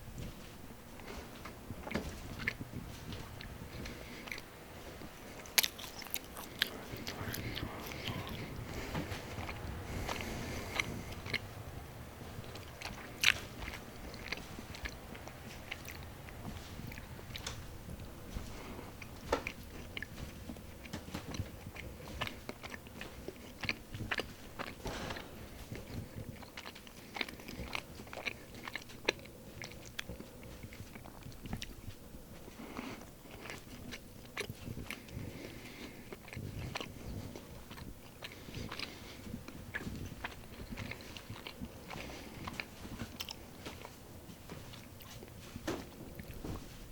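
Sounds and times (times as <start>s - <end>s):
bread crunching while chewed: 0.0s - 46.9s.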